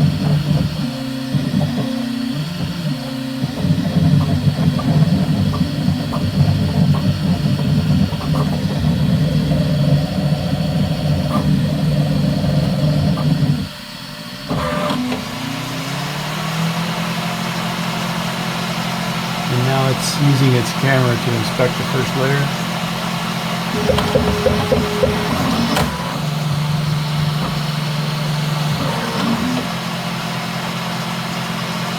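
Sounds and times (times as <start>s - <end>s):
fans running: 0.0s - 31.9s
printer motors buzzing and whirring: 0.0s - 31.9s
short rising motor whine: 8.6s - 31.6s.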